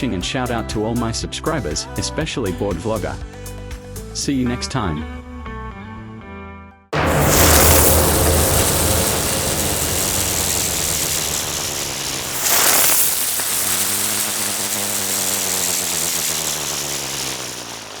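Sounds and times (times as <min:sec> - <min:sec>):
whoosh sweep: 0:07.0 - 0:15.2
low synth tones: 0:07.0 - 0:15.6.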